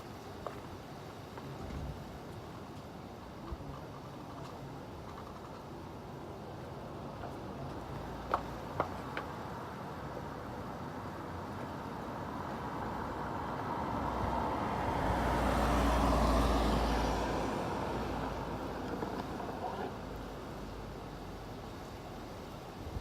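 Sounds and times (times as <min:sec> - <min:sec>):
road vehicle passing by: 0:07.6 - 0:22.6.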